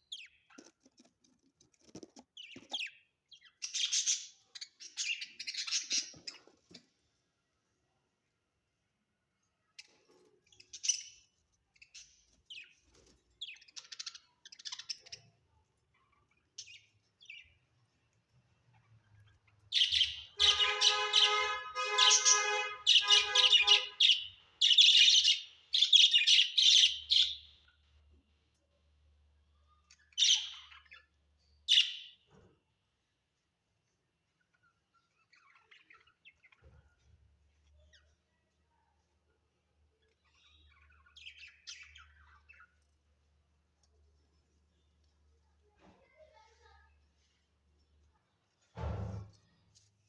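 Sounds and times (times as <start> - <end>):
budgerigars chirping and chattering: 1.8 - 6.9, 9.8 - 18.0, 18.7 - 28.0, 29.8 - 32.4.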